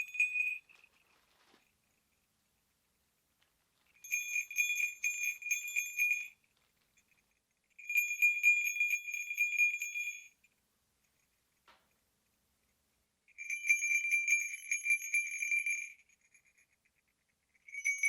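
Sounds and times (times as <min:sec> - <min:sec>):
sleigh bells jingling: 0:00.0 - 0:02.3, 0:03.8 - 0:11.4, 0:13.3 - 0:18.0.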